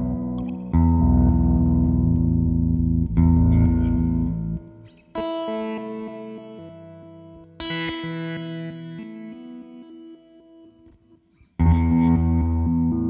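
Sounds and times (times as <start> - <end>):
electric guitar with reversed repeats: 0.0 - 4.9.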